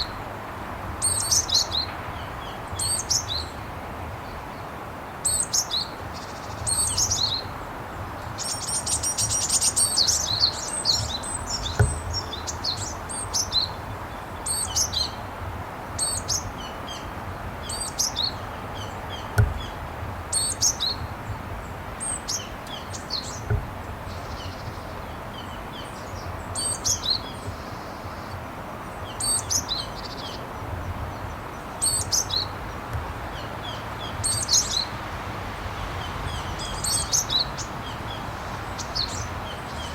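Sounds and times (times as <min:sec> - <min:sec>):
low thumps: 0:10.9 - 0:13.1, 0:17.2 - 0:25.7.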